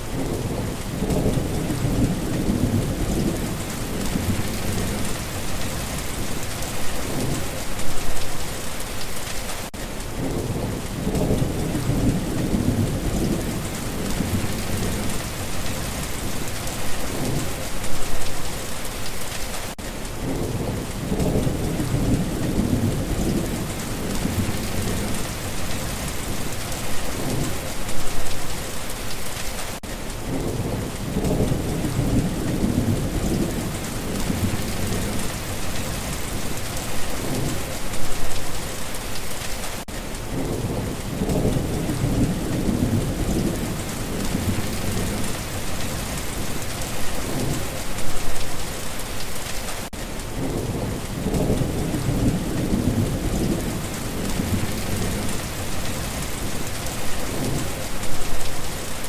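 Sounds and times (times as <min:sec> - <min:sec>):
rolling thunder: 0:00.0 - 0:07.6, 0:10.1 - 0:17.9, 0:20.2 - 0:28.2, 0:30.2 - 0:38.3, 0:40.3 - 0:48.0, 0:50.4 - 0:58.4
heavy rain: 0:00.0 - 0:59.0.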